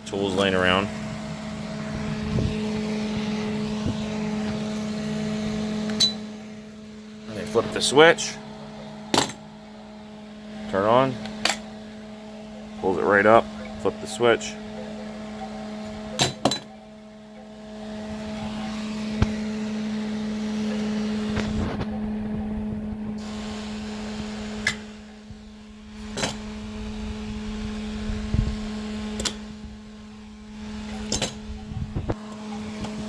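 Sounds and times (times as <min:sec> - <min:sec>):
cooling fan: 0:00.0 - 0:33.0
electrical hum: 0:00.0 - 0:33.0
steel tools clanking on magnet: 0:05.9 - 0:06.2, 0:16.2 - 0:16.7, 0:31.0 - 0:31.4.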